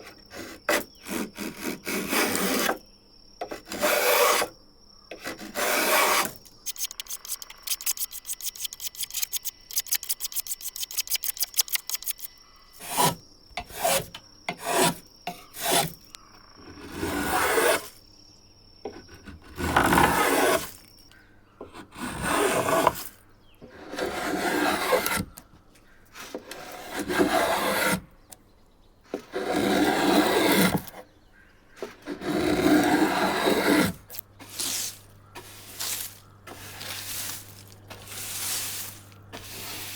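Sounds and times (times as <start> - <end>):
hand tool scraping wood: 0.0 - 2.8, 3.4 - 4.5, 5.1 - 16.1, 16.9 - 18.0, 19.5 - 20.8, 21.9 - 25.4, 26.2 - 28.0, 29.1 - 31.0, 31.8 - 39.9.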